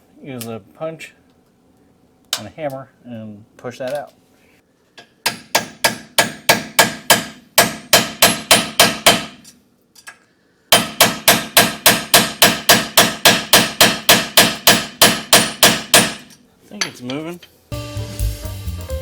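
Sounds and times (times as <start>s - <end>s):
hammer striking steel punch: 5.2s - 9.4s, 10.7s - 16.3s.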